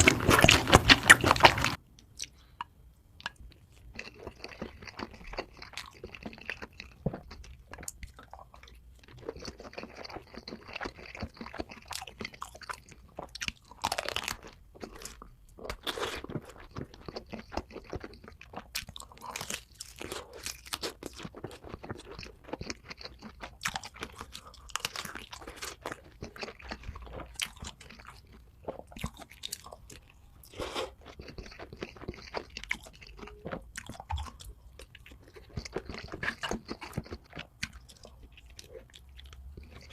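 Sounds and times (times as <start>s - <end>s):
crisp food crackling: 0.0s - 1.8s
wet chewing: 0.0s - 2.4s, 3.2s - 39.9s.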